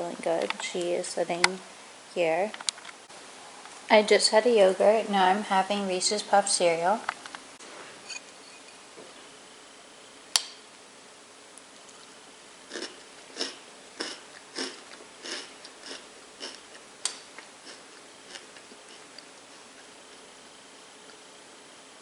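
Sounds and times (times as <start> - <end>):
person chewing crunchy cereal: 11.8 - 20.4.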